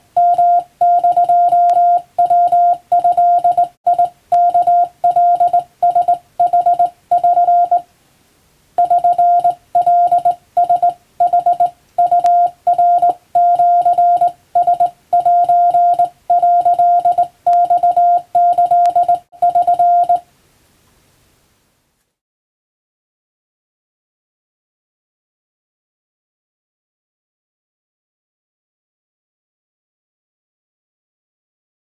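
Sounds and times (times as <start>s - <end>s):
morse code beeps: 0.2s - 7.8s, 8.8s - 20.2s.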